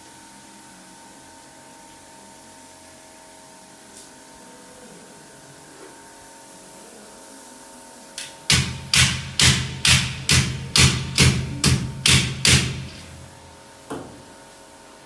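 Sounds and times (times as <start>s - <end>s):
hammer blows: 8.2s - 13.4s.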